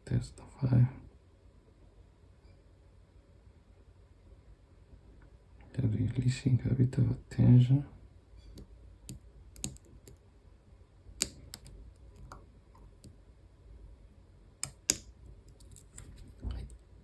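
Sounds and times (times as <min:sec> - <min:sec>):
lock pick metallic clicks: 0:08.5 - 0:10.2, 0:11.2 - 0:12.4, 0:14.6 - 0:16.0.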